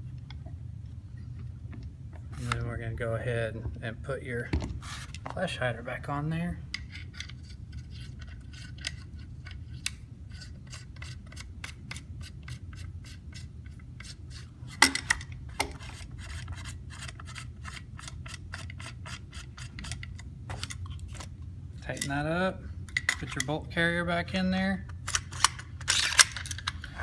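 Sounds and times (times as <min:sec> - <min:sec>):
metal scraping clicks: 0:06.7 - 0:22.3, 0:22.9 - 0:23.6, 0:24.8 - 0:27.0.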